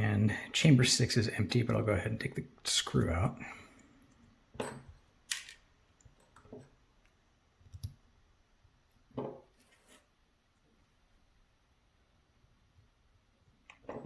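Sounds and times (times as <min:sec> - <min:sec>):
metal lock parts clicking: 0:04.6 - 0:05.7.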